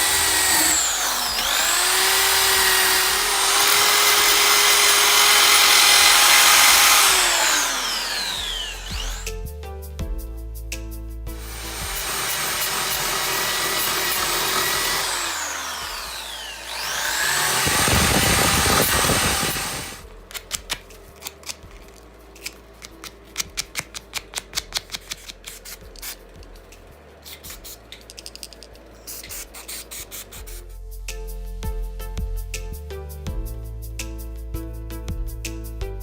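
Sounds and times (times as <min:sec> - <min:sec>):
power tool whining: 0:00.0 - 0:09.5, 0:11.4 - 0:20.1.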